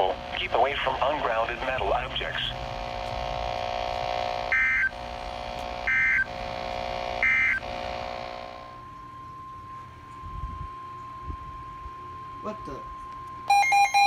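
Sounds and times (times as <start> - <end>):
digital data bursts: 0.0 - 8.8
steady tone: 0.0 - 13.7
steady hum: 0.0 - 14.0.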